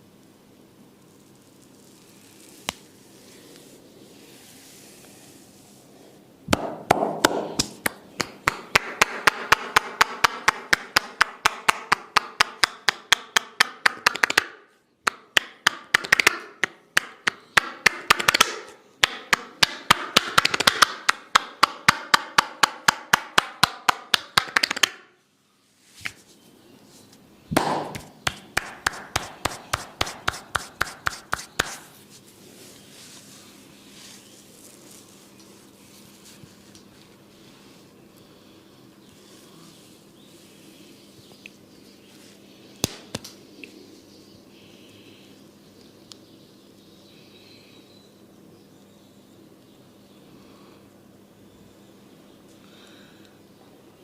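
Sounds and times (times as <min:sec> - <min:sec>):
hands slapping in massage: 0:06.5 - 0:25.0, 0:26.0 - 0:26.2, 0:27.5 - 0:32.0, 0:42.8 - 0:43.4.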